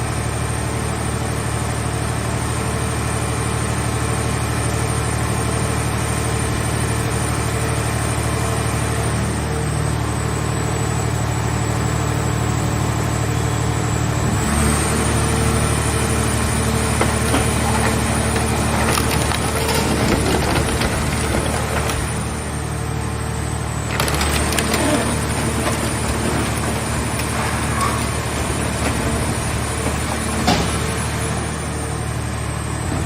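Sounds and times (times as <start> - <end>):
machine power unit whining: 11.6 - 32.4
metal clanks and crackles: 16.7 - 22.6, 23.7 - 31.4.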